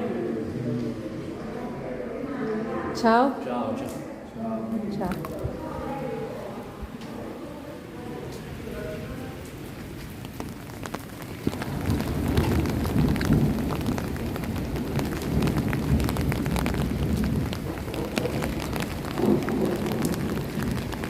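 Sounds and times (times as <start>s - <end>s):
rain pouring: 4.9s - 21.0s.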